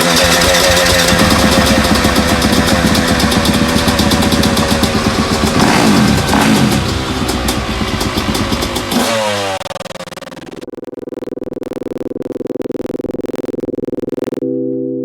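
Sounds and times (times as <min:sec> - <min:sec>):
dirt bike engine revving: 0:00.0 - 0:10.6
electronic music with pulse: 0:00.0 - 0:15.0.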